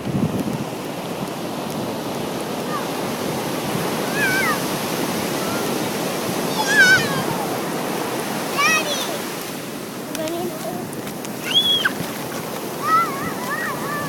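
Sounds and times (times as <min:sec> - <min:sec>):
surf washing on a beach: 0:00.0 - 0:14.0.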